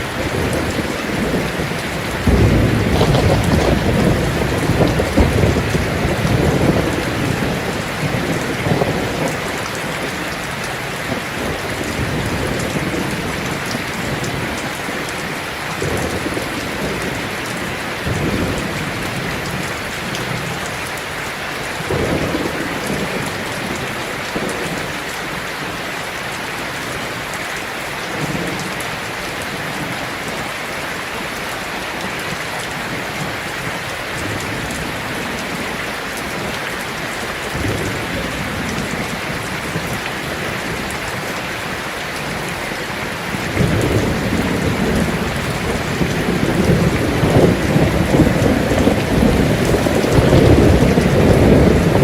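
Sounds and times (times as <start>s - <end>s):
thunder rumbling: 0.0s - 20.6s, 34.2s - 52.0s
heavy rain on a tin roof: 0.0s - 52.0s.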